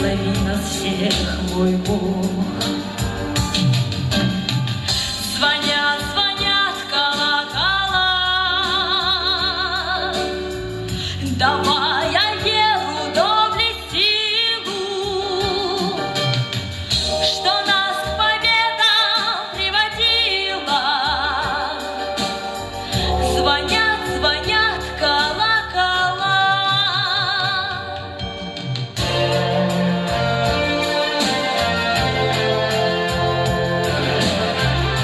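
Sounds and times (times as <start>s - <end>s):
woman singing with vibrato: 0.0s - 3.6s, 4.8s - 16.2s, 17.0s - 28.3s
backing music: 0.0s - 35.0s.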